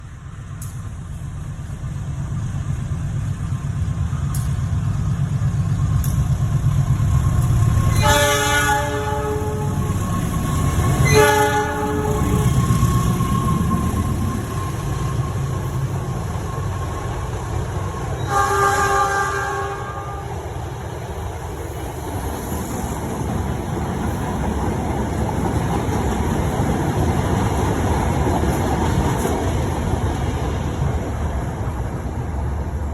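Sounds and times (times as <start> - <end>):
train rumbling: 0.0 - 32.9
train horn multi-note blast: 7.9 - 10.1, 11.0 - 12.6, 18.2 - 20.4.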